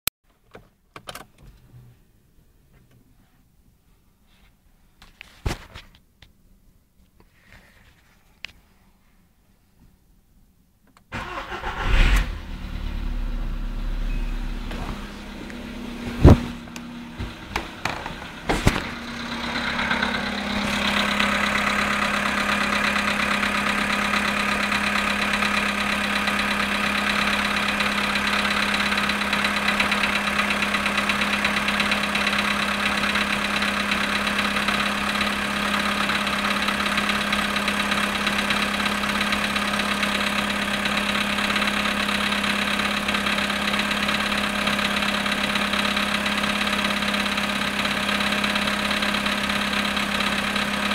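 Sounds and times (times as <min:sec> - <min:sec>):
car engine starting and idling: 0:10.9 - 0:50.9.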